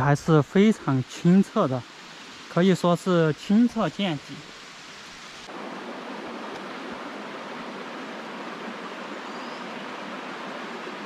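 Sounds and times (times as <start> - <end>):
stream rushing over boulders: 0.0 - 11.0.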